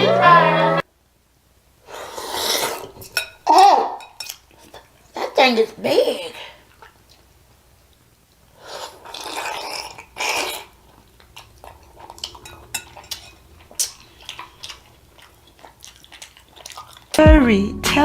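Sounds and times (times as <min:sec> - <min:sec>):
person chewing food: 0:01.9 - 0:05.2, 0:06.6 - 0:17.2.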